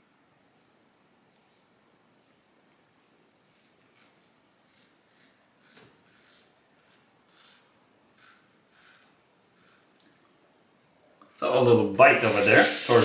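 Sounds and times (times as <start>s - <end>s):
razor scraping stubble: 12.1s - 13.0s.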